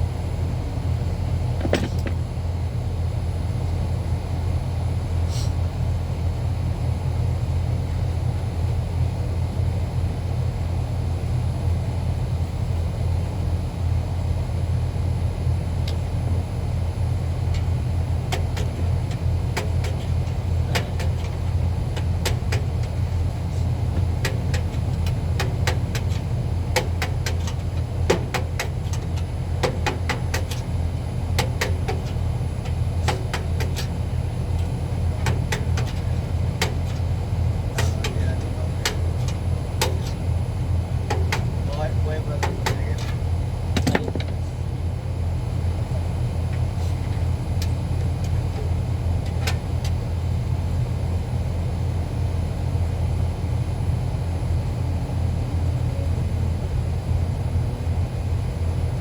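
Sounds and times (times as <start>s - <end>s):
low machine drone: 0.0s - 59.0s
sharp clicks and taps: 24.0s - 30.7s, 42.4s - 43.2s.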